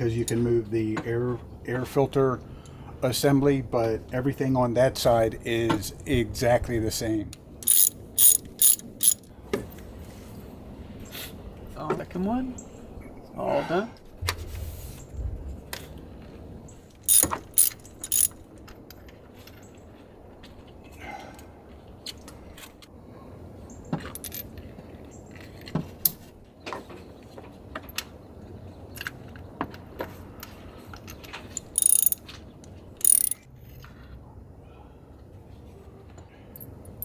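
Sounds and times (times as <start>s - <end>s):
socket ratchet clicking: 7.7s - 9.2s, 17.1s - 18.3s, 31.6s - 32.2s, 33.0s - 33.4s
tools clattering: 7.7s - 9.2s, 17.1s - 18.3s, 31.6s - 32.2s, 33.0s - 33.4s.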